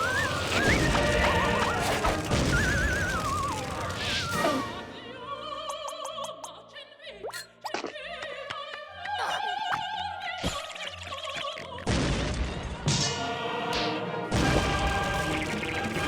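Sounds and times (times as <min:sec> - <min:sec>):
cartoon music: 0:00.0 - 0:04.8
opera-like voice with vibrato: 0:00.0 - 0:11.8.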